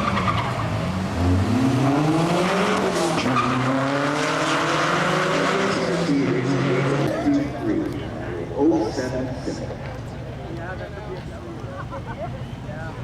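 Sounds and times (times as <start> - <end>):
race car engine accelerating: 0.0 - 7.6.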